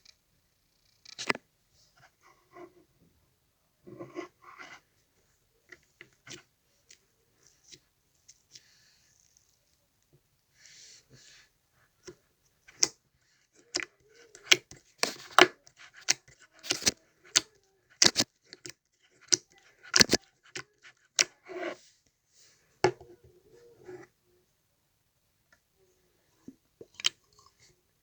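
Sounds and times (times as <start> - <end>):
slime squishing: 13.6 - 21.8.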